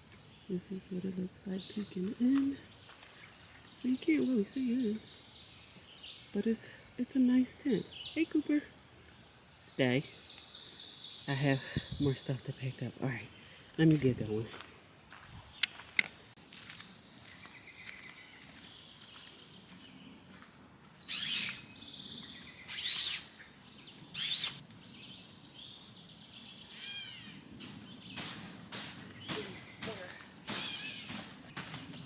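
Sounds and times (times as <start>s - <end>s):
birds calling: 0.0s - 32.0s
bird trill: 21.1s - 24.8s, 26.6s - 27.5s, 29.1s - 32.0s.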